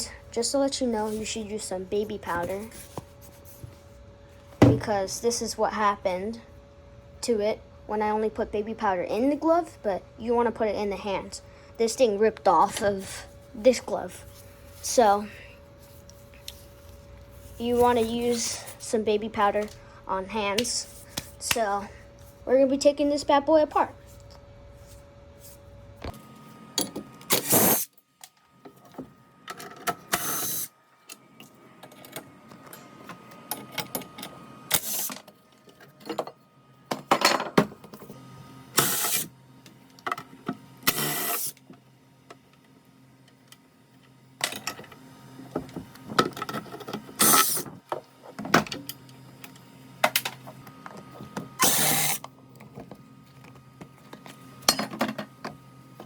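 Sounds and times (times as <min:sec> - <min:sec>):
short bursts of tool noise: 0:27.3 - 0:27.9, 0:40.9 - 0:41.6, 0:47.2 - 0:47.6, 0:51.6 - 0:52.2.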